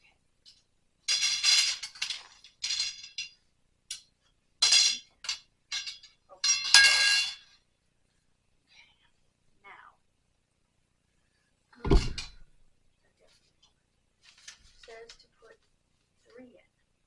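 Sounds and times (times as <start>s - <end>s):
drying rack parts clinking: 0.5s - 7.6s, 11.8s - 12.6s.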